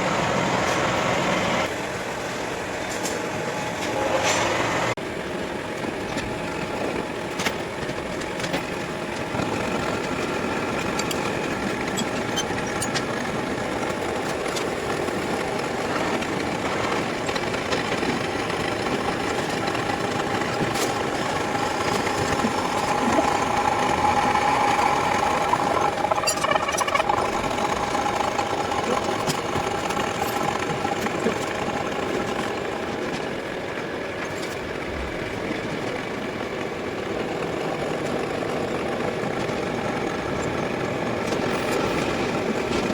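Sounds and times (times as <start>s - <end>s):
machine tool running: 9.1s - 33.4s
higher machine tone: 21.1s - 32.4s.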